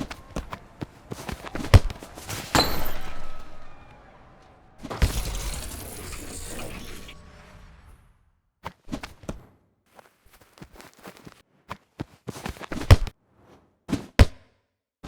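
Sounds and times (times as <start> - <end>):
quick footsteps: 0.0 - 3.4, 8.8 - 14.2
ball touches: 0.0 - 3.9
heavy impact: 0.0 - 8.1.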